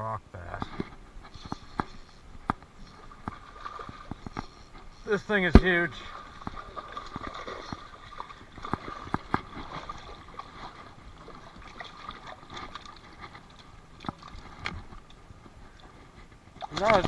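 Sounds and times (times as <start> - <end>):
creek water running: 0.4 - 17.0
kayak and gear knocking: 5.6 - 17.0.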